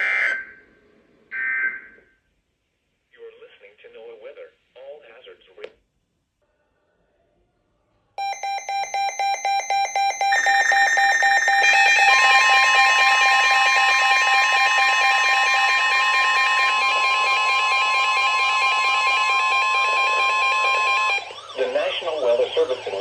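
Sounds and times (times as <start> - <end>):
fast pulsing beeps: 8.2 - 23.0
steady alarm tone: 8.2 - 23.0.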